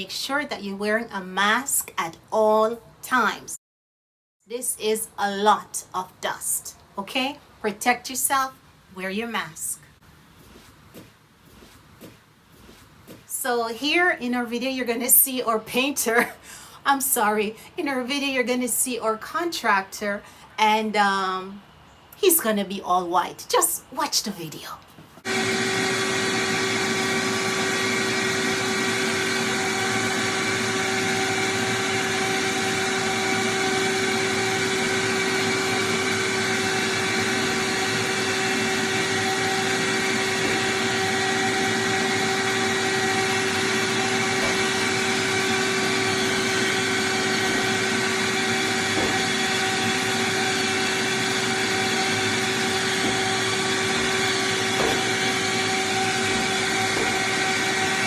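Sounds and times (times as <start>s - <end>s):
electric sander motor whine: 25.2s - 58.0s.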